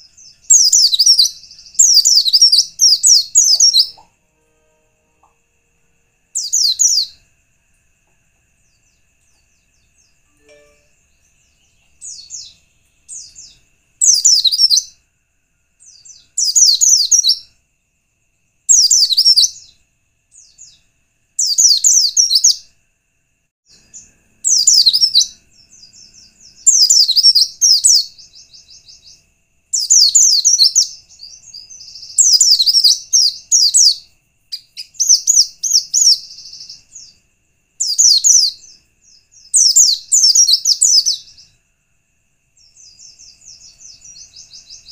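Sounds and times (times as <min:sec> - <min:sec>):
bird twittering: 0:00.0 - 0:04.1, 0:11.8 - 0:14.9, 0:23.9 - 0:29.2.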